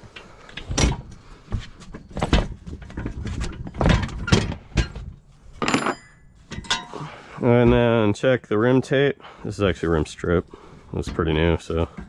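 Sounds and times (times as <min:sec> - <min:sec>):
short metallic ring: 0:05.6 - 0:07.0.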